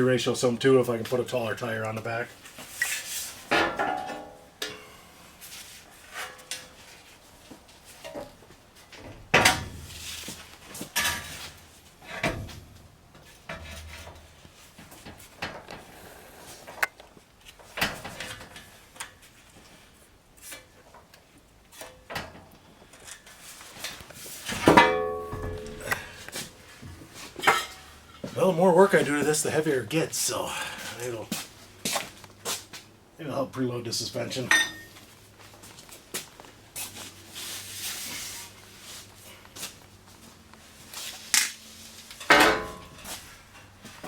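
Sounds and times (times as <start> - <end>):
metal clanks and knocks: 3.5 - 5.0, 10.8 - 14.3, 24.4 - 28.4, 42.2 - 43.7.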